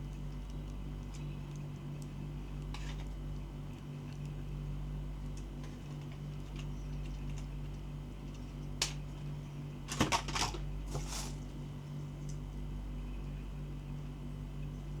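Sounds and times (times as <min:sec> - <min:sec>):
steady low hum: 0:00.0 - 0:15.0
packaging rustle: 0:09.9 - 0:11.4.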